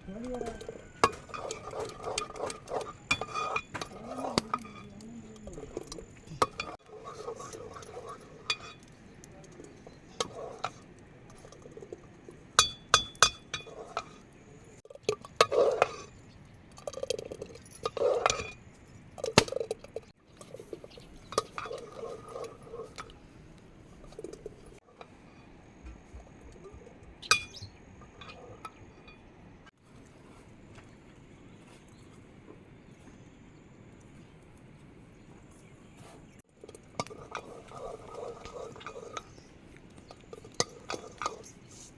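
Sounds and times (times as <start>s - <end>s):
dishes clinking: 0.4s - 12.0s, 12.6s - 14.3s, 26.7s - 29.3s.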